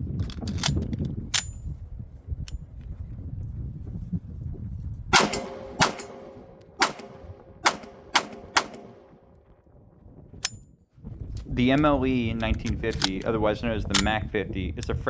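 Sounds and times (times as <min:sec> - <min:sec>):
pistol shots: 0:05.2 - 0:09.3.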